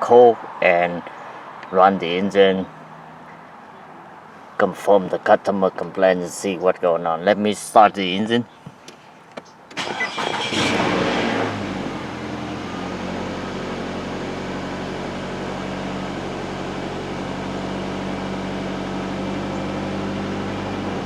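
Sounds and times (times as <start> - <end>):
car engine starting and idling: 8.9 - 21.0.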